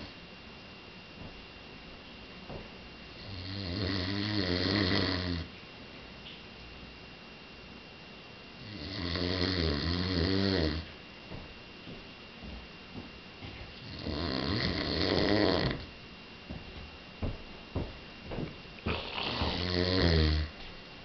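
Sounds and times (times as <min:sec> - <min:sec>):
man snoring loudly: 0:03.2 - 0:05.5, 0:08.6 - 0:10.9, 0:13.8 - 0:15.8, 0:18.9 - 0:20.6.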